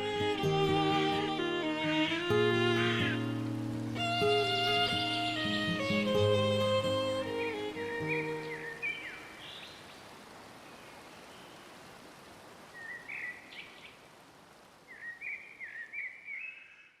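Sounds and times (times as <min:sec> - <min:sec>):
music: 0:00.0 - 0:08.8
bird chirping: 0:00.0 - 0:10.1
falling water rushing: 0:00.0 - 0:15.1.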